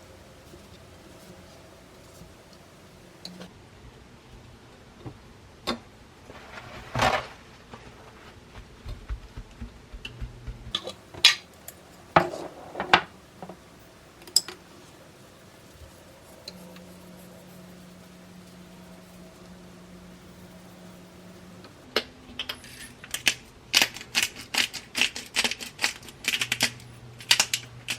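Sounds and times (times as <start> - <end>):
faint steady hum: 0.0 - 27.9.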